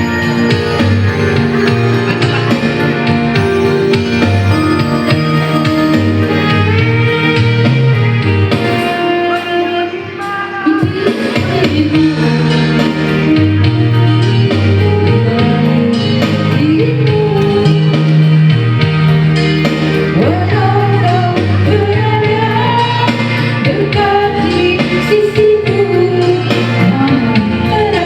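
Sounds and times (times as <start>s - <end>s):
person singing: 0.0s - 8.0s
instrumental backing with bass: 0.0s - 28.0s.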